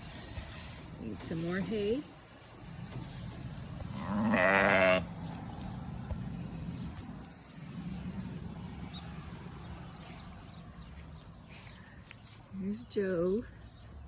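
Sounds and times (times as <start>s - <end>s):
sheep bleating: 3.9s - 5.1s.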